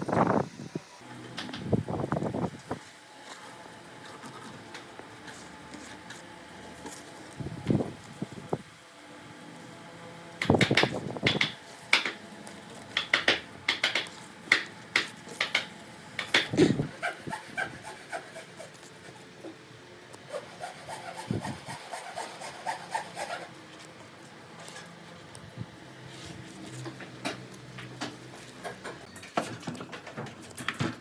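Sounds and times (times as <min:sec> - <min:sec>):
hand tool scraping wood: 0:12.9 - 0:19.3, 0:20.3 - 0:23.5.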